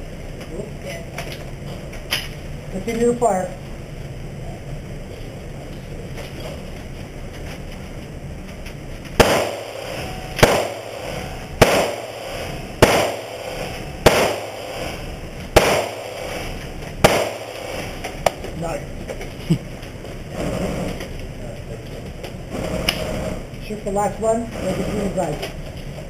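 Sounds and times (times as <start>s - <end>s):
single gunshots with ringing tail: 9.2s - 15.0s, 15.6s - 18.0s.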